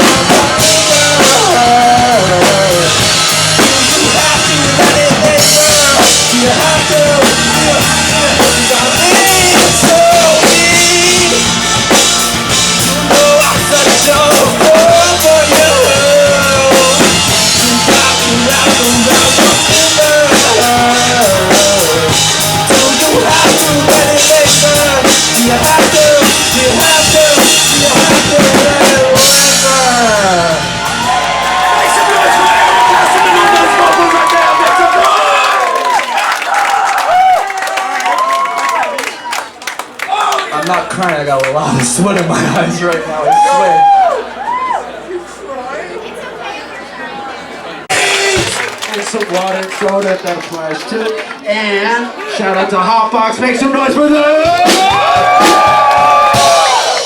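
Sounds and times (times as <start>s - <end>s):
rock band playing live: 0.0s - 34.4s, 47.8s - 50.4s, 53.9s - 57.0s
drum kit: 0.0s - 36.3s, 47.9s - 50.4s, 54.2s - 57.0s.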